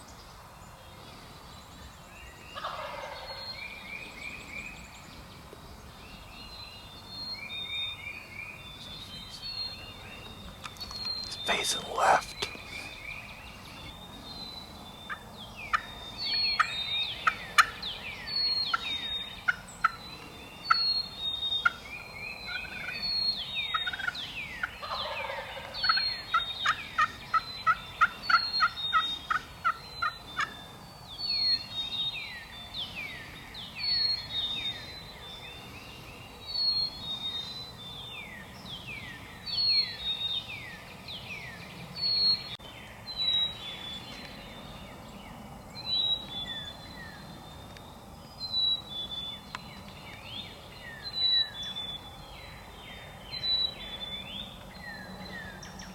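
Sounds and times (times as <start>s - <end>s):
wild turkeys calling: 2.6s - 3.4s, 23.8s - 30.5s.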